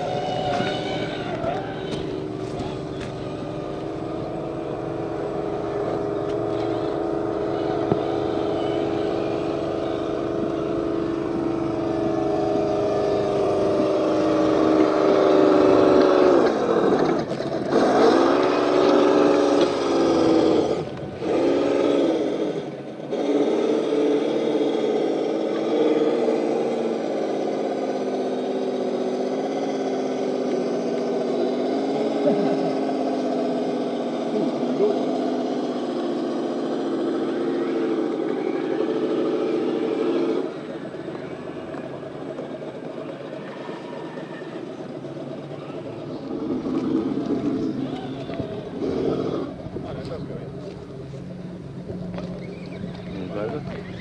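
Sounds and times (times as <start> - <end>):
toy truck motor whining: 0.0 - 5.0, 5.6 - 11.8.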